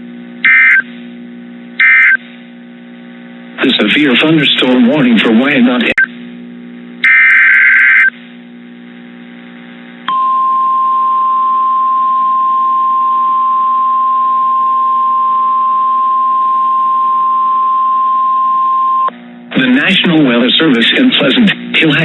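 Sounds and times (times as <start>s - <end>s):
steady alarm tone: 0.5s - 0.8s, 1.8s - 2.2s, 7.0s - 8.1s
harsh digital data burst: 1.8s - 2.2s, 7.0s - 8.1s.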